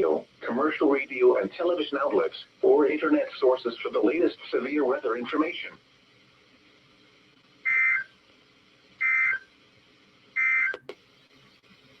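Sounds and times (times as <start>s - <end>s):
digital data tone bursts: 10.4s - 10.8s.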